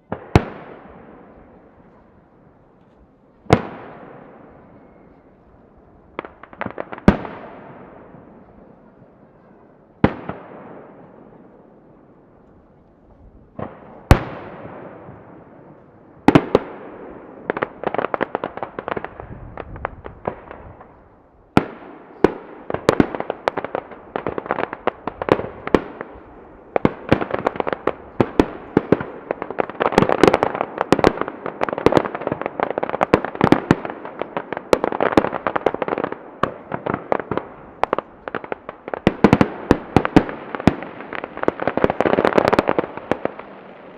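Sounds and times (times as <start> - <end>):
distant firework bangs echoing: 0.0 - 12.4, 13.5 - 43.9
firework crackling pops: 6.1 - 8.6, 12.4 - 43.9.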